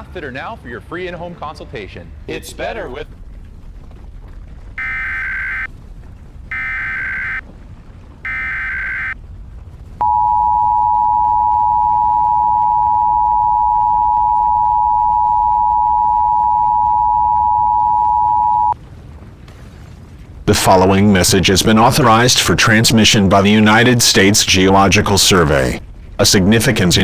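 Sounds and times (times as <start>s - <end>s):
digital data tone bursts: 4.8s - 5.7s, 6.5s - 7.4s, 8.3s - 9.2s
two-tone alert signal: 4.8s - 5.7s, 6.5s - 7.4s, 8.3s - 9.2s.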